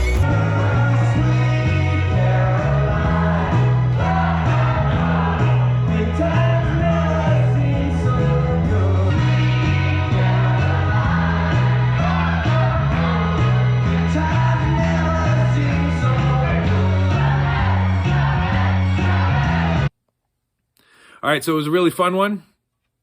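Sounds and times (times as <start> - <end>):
singing over repeating bass line: 0.0 - 19.9.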